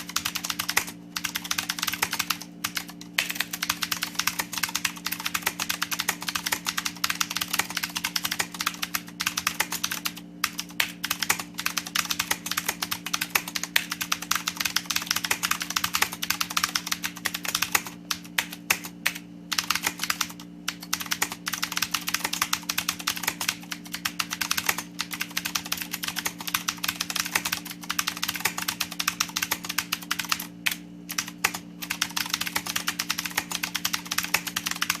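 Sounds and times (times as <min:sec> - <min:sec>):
typing on mechanical keyboard: 0:00.0 - 0:35.0.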